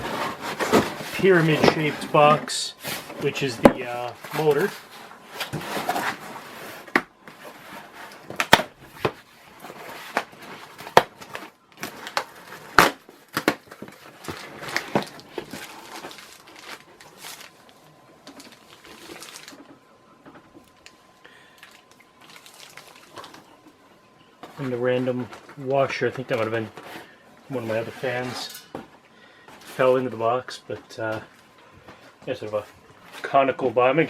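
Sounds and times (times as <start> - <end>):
cardboard packaging handled and opened: 0.0 - 21.0.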